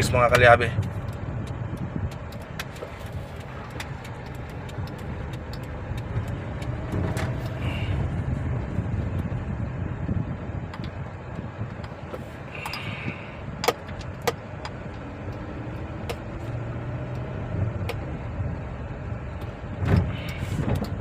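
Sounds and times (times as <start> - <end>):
car engine running: 0.0 - 21.0
sharp clicks: 0.3 - 7.6.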